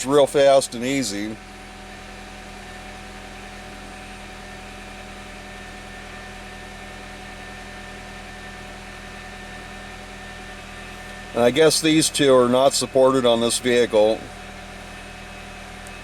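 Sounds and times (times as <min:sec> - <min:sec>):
car engine idling: 0:09.6 - 0:16.0.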